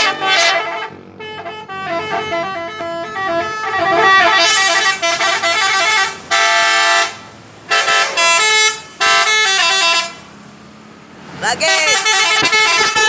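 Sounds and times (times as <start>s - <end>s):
multi-tone musical air horn: 0.0s - 10.2s, 11.7s - 13.0s.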